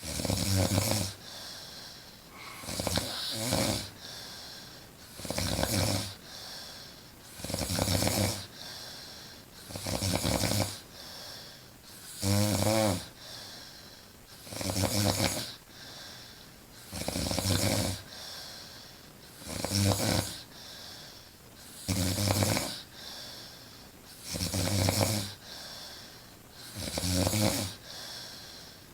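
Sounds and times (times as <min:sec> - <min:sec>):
woman snoring loudly: 0:00.0 - 0:01.3, 0:02.3 - 0:04.2, 0:05.2 - 0:06.2, 0:26.8 - 0:27.8.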